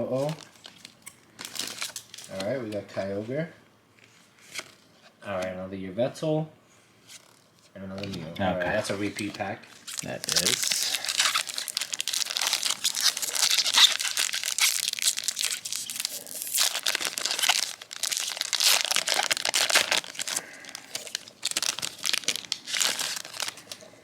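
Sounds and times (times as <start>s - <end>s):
foil wrapper tearing and crinkling: 0.2s - 2.5s, 9.8s - 23.8s.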